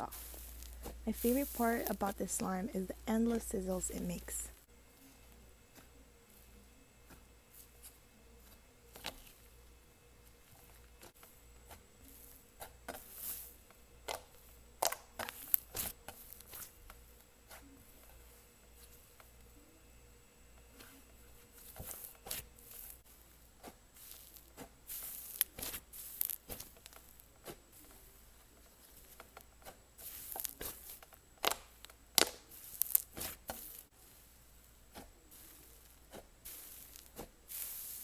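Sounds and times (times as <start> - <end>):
slime crackling and popping: 14.0 - 16.8, 23.6 - 28.0, 28.9 - 33.9.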